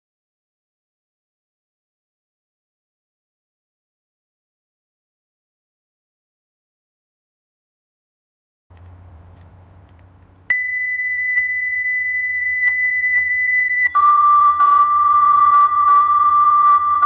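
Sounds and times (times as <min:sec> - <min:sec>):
high test tone: 0:10.5 - 0:17.0
layered steady tones: 0:10.5 - 0:17.0.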